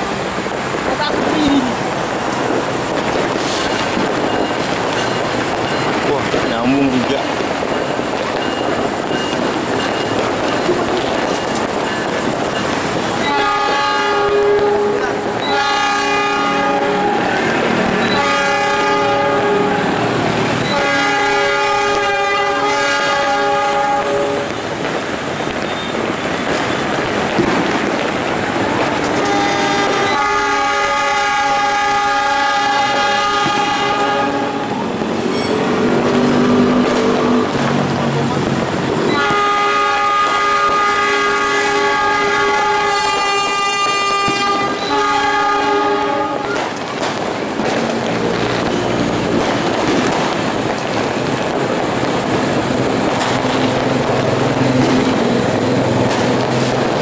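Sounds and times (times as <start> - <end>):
train noise: 0.0 - 57.0
fainter lower horns: 13.2 - 24.5, 28.8 - 34.8, 39.1 - 46.8
locomotive air horn blasts: 13.2 - 24.6, 29.0 - 34.8, 39.1 - 46.8.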